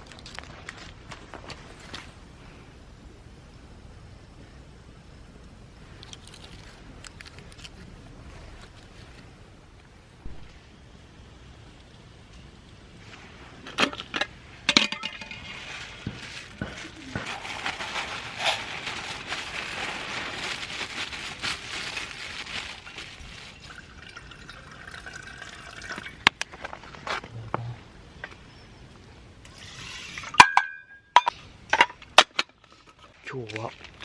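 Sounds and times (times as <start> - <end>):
cookware clinking: 14.7 - 15.4, 30.3 - 31.9
water pouring into a pot: 22.8 - 26.3.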